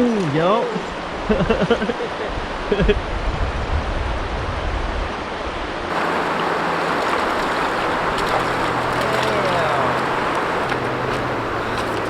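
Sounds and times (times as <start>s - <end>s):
river current rushing: 5.9s - 12.0s.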